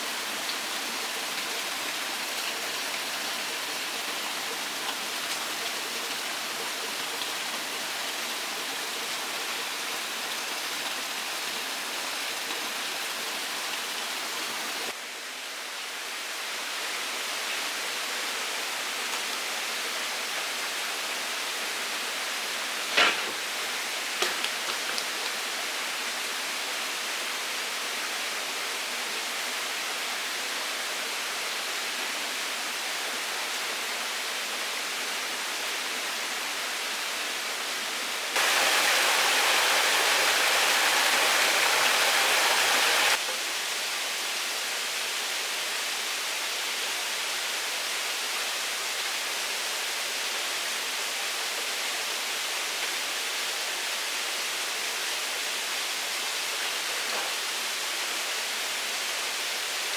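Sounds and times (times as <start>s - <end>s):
running water in a stream: 0.0s - 15.2s, 15.8s - 59.9s.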